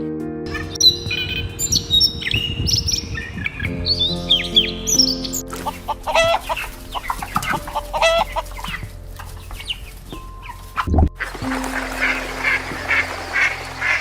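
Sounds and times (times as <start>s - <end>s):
chickens clucking: 5.5s - 9.8s, 11.2s - 14.0s.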